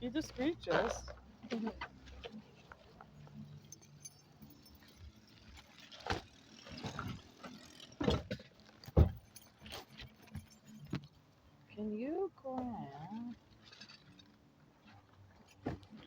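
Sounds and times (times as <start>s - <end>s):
objects clicking and clattering: 0.1s - 11.2s.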